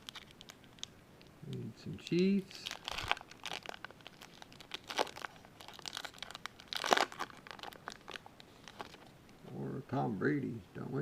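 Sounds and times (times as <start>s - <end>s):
wrapper crinkling and tearing: 0.0s - 1.0s, 2.5s - 9.1s.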